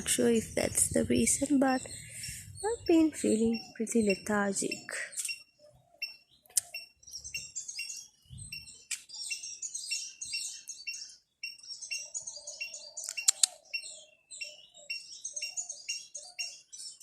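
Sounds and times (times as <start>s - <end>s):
small birds chirping: 0.0s - 17.0s
sharp clicks: 6.5s - 6.7s, 8.9s - 9.1s, 13.0s - 13.6s.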